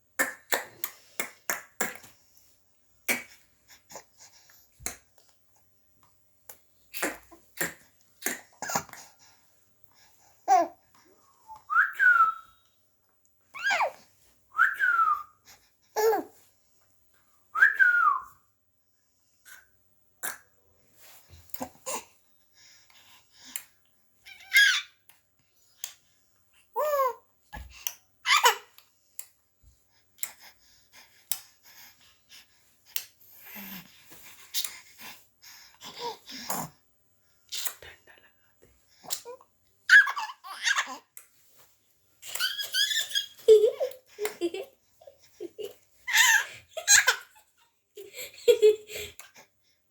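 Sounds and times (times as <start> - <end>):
baby squealing: 24.4 - 24.9, 39.9 - 41.0, 42.3 - 43.4.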